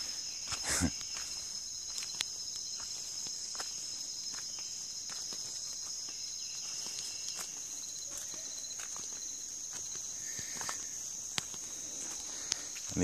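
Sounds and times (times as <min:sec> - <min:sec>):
insects chorus: 0:00.0 - 0:13.0
faint clicks: 0:12.4 - 0:12.7.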